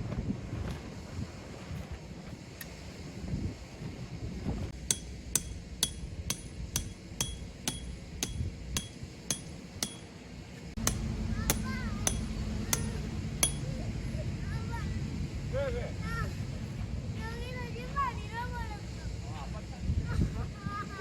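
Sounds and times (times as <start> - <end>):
steady low hum: 0.0 - 21.0
hammer striking metal tent peg: 4.8 - 10.2, 10.8 - 13.7.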